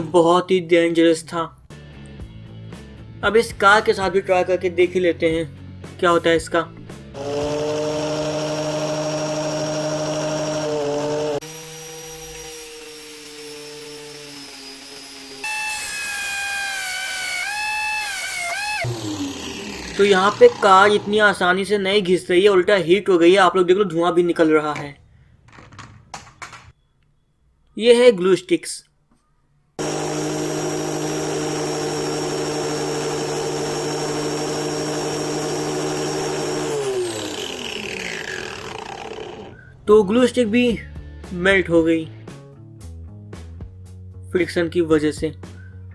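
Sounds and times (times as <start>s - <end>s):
angle grinder whining: 7.0s - 21.5s, 29.8s - 39.9s
grinder disc spinning down: 7.1s - 21.4s, 29.8s - 39.9s.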